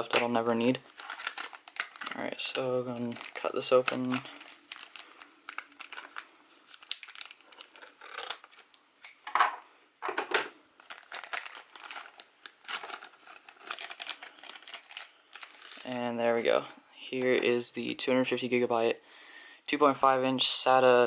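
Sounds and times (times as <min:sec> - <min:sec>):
packaging crinkling and tearing: 0:00.0 - 0:09.3, 0:10.8 - 0:16.1.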